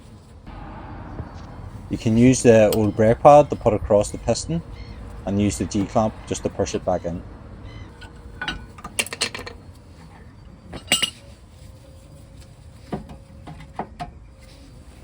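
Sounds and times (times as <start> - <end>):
metal clinks and taps: 10.8 - 11.2.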